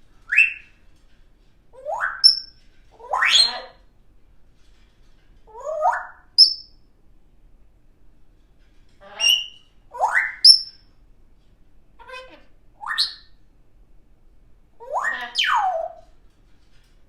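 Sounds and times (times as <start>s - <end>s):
parrot whistling: 0.3s - 0.6s, 9.2s - 10.7s, 12.8s - 13.3s, 14.9s - 16.0s.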